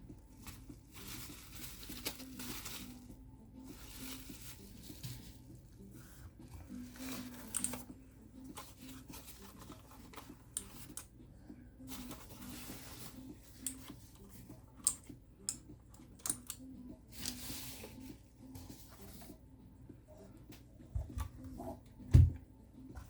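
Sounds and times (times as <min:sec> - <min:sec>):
packaging rustling: 0:00.4 - 0:03.1.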